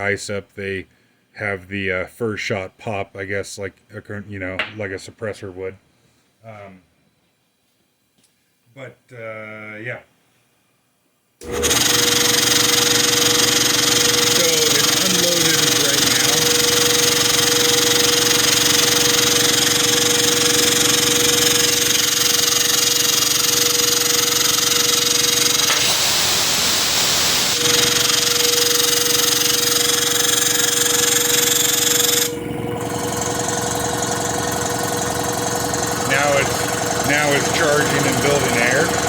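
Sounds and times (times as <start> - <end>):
air compressor humming: 11.4 - 39.0
air hissing from valve: 25.4 - 29.8.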